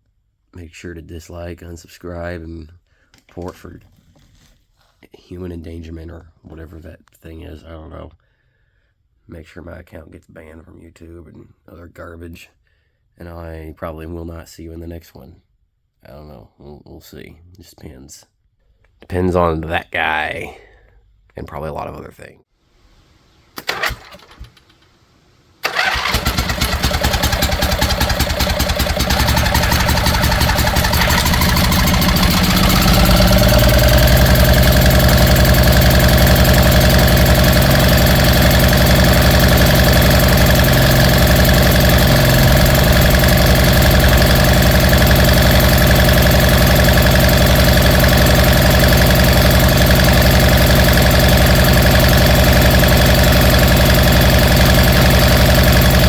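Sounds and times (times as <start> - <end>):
small engine running: 23.6 - 24.7, 25.6 - 56.0.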